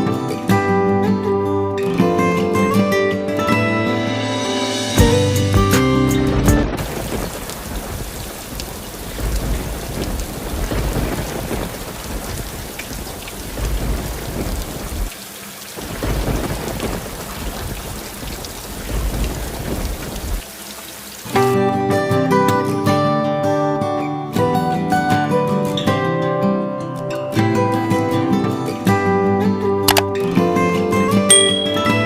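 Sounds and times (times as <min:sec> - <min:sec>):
heavy rain: 0:04.7 - 0:22.4
deep thunder rumbles: 0:06.3 - 0:15.1, 0:15.8 - 0:20.4.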